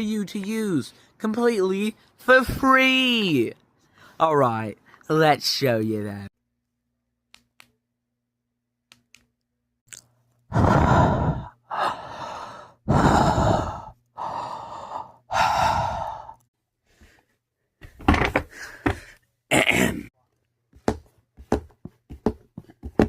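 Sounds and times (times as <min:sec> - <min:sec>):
person breathing heavily: 0:10.5 - 0:17.4, 0:18.4 - 0:19.2.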